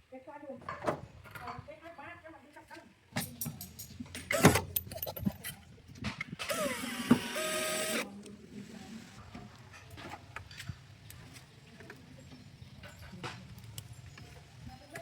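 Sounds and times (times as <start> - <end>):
hissing mechanical whir: 6.4 - 9.2.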